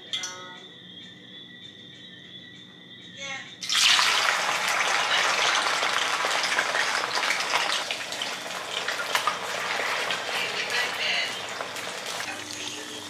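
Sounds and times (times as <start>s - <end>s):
plantain frying in hot oil: 3.6s - 13.0s.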